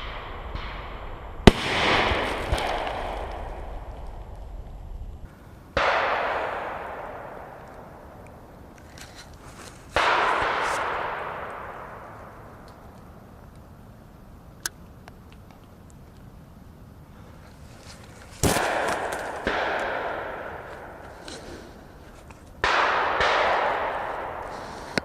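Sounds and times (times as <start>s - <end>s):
loud firecracker bangs with echo: 0.0s - 4.2s, 5.8s - 8.2s, 10.0s - 12.4s, 18.4s - 22.0s, 22.6s - 25.0s.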